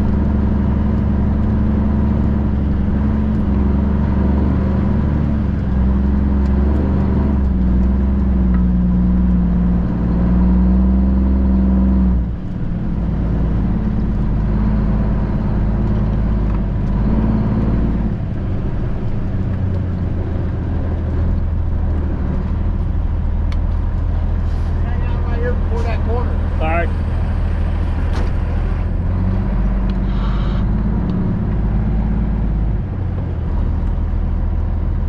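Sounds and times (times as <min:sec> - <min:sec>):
diesel truck engine running: 0:00.0 - 0:35.0.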